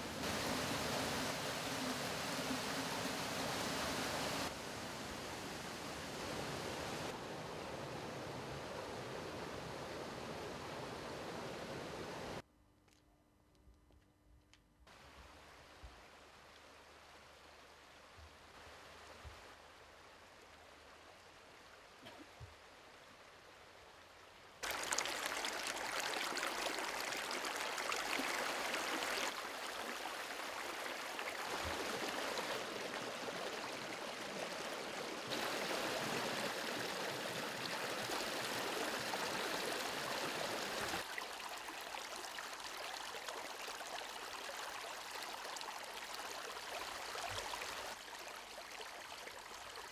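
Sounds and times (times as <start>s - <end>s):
faint hiss: 0.0s - 12.4s
stream water rushing: 0.0s - 12.4s, 24.6s - 49.9s.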